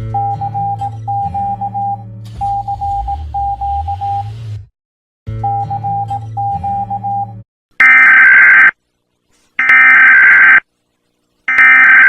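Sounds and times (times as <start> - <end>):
harsh electronic buzzer blasts: 7.8 - 8.7, 9.6 - 10.6, 11.5 - 12.0
rapid pulsing alert beep: 7.8 - 8.7, 9.6 - 10.6, 11.5 - 12.0.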